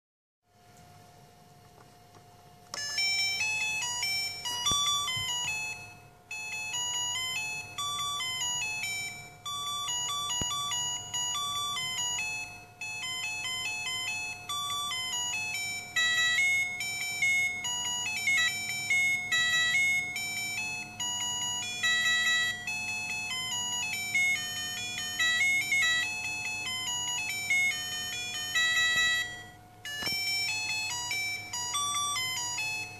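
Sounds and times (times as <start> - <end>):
faint steady hum: 0.5 - 32.9
electronic beeping tune: 2.8 - 32.9.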